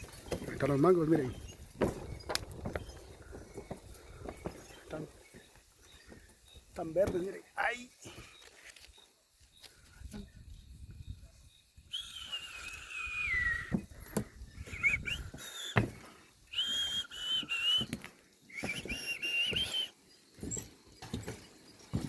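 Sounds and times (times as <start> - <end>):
handling and footstep rumble: 0.0 - 6.3
person whistling: 11.9 - 13.9, 14.6 - 20.0.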